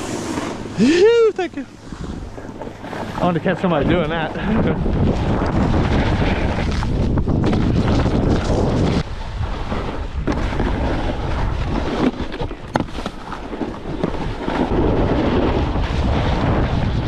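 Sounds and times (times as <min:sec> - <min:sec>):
snowboard sliding on icy snow: 0:00.0 - 0:17.0
wind on microphone: 0:00.0 - 0:17.0.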